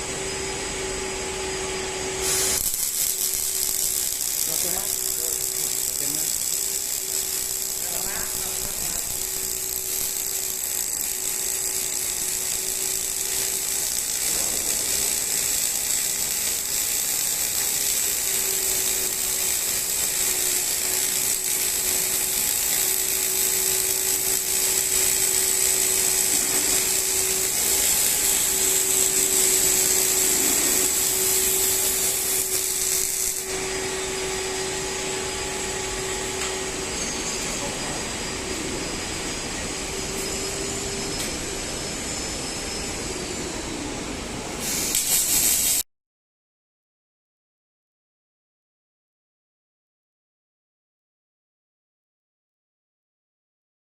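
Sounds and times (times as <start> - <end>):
welding arc hissing: 2.0 - 43.6, 44.5 - 45.8.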